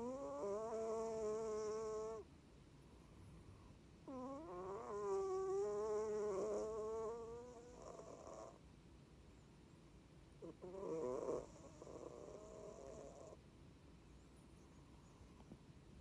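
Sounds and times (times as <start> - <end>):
cat snoring: 0.0 - 2.3, 4.1 - 8.6, 10.4 - 13.4.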